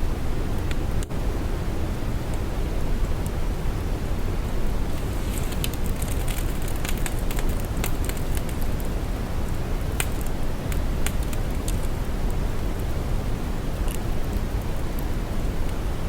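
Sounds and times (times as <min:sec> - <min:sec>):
low rumbling hiss: 0:00.0 - 0:16.0
soft crackles: 0:04.4 - 0:12.9.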